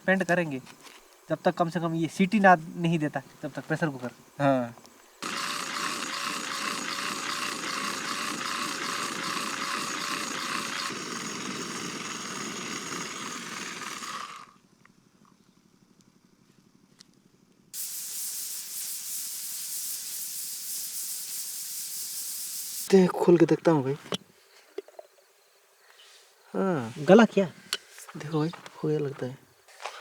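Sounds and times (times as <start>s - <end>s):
steady steam hiss: 0.0s - 14.0s, 17.8s - 24.8s.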